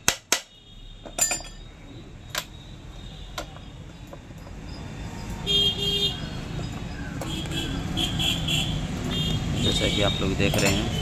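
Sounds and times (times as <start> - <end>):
low rumble of traffic: 0.0 - 11.0
vehicle horn honking: 5.4 - 6.2.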